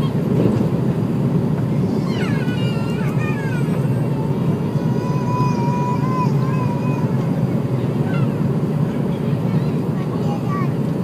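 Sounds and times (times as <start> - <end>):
jet engines roaring in cabin: 0.0 - 11.0.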